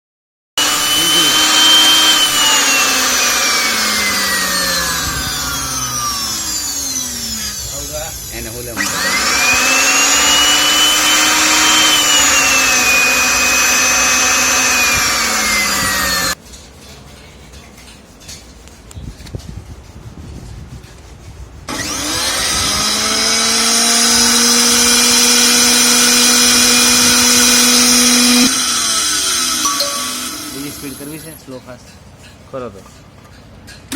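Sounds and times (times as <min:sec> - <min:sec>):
mixer grinder motor whining: 0:00.6 - 0:16.4, 0:21.7 - 0:31.4
rubbing and handling sounds: 0:00.6 - 0:22.7, 0:31.0 - 0:33.7.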